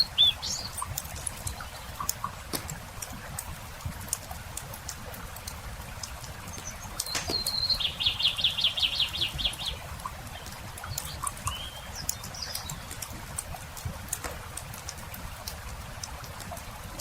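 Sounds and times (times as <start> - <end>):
songbird singing: 0.0 - 3.3, 5.8 - 14.5
campfire crackling and popping: 0.0 - 17.0.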